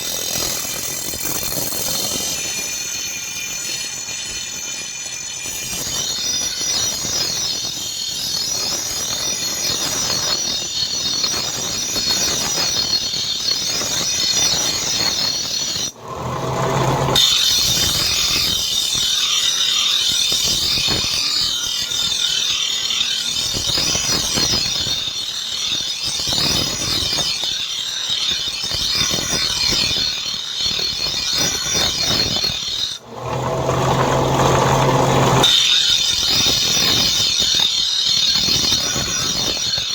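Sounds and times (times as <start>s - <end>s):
grinder grinding steel: 13.1s - 39.9s
low hum: 16.0s - 17.2s, 33.1s - 35.5s.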